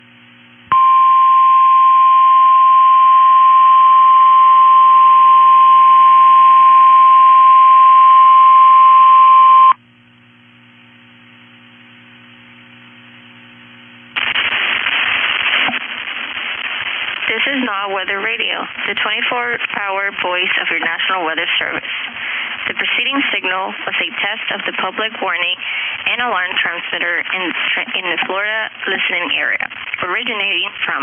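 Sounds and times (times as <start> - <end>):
faint hiss and hum: 0.0 - 1.6, 4.1 - 31.0
high alarm tone: 0.7 - 9.8
burst of static noise: 11.8 - 31.0.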